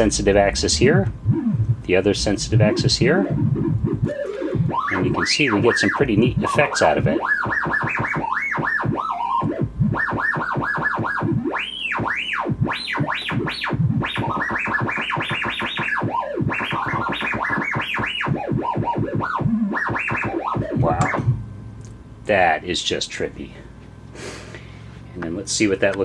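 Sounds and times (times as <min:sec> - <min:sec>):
electronic warble swooping in pitch: 0:00.0 - 0:06.7, 0:14.1 - 0:21.8.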